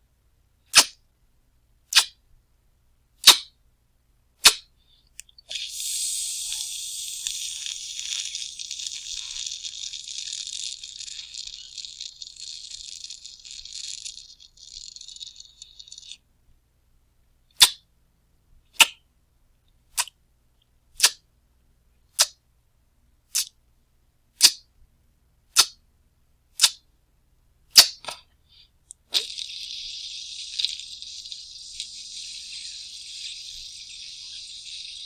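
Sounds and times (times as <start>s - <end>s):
lighter gas hissing: 5.5s - 15.6s, 29.1s - 35.0s
lighter clicking: 5.6s - 9.5s.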